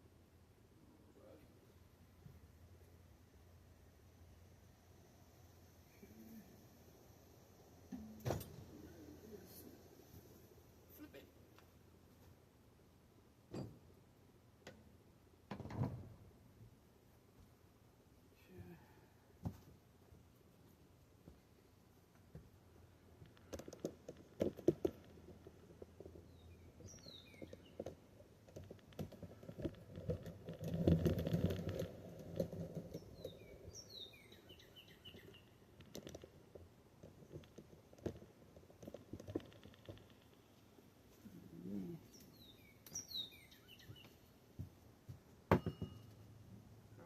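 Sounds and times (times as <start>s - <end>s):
birds chirping: 26.1s - 28.0s, 32.8s - 35.9s, 41.2s - 44.3s.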